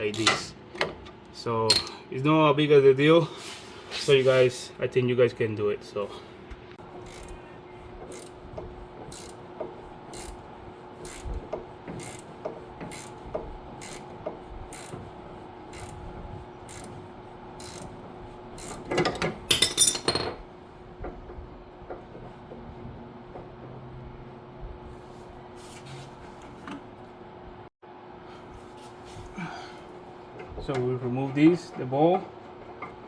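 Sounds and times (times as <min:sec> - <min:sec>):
wrench clicking: 0:09.1 - 0:09.4, 0:10.2 - 0:10.4, 0:13.8 - 0:14.1, 0:17.6 - 0:17.9.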